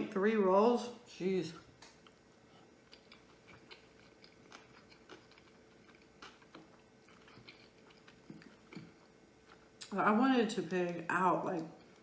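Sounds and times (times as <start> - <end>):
faint steady hum: 0.0 - 12.0
chewing with wet mouth clicks: 2.8 - 9.9.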